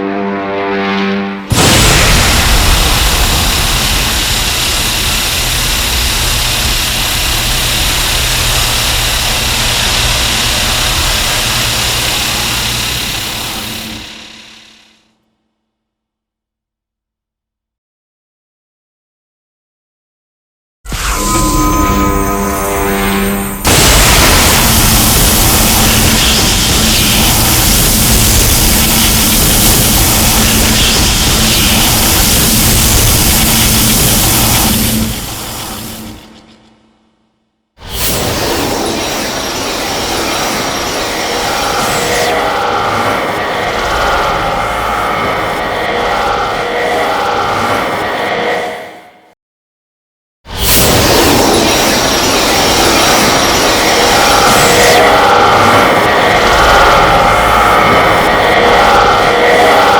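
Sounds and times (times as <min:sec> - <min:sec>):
monster rushing rumbling noise: 0:00.8 - 0:12.9, 0:22.5 - 0:36.2, 0:52.9 - 0:59.9
held tone: 0:20.9 - 0:25.5.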